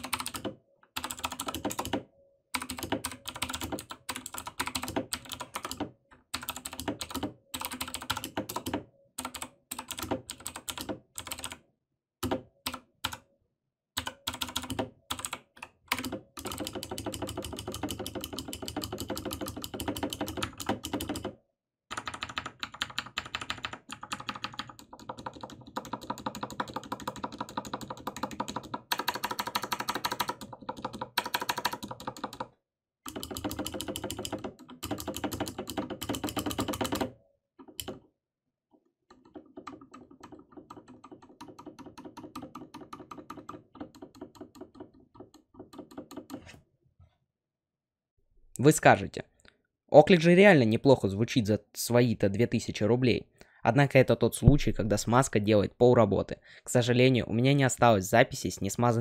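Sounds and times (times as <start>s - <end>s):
mechanical keyboard typing: 0.0s - 2.0s, 2.6s - 11.6s, 12.2s - 13.2s, 14.0s - 21.3s, 21.9s - 32.5s, 33.1s - 38.0s, 39.1s - 46.6s.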